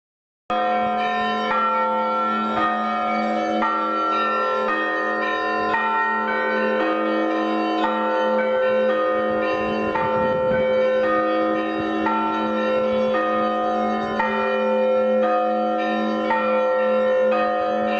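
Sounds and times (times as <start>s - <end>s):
church bells ringing: 0.5s - 17.9s.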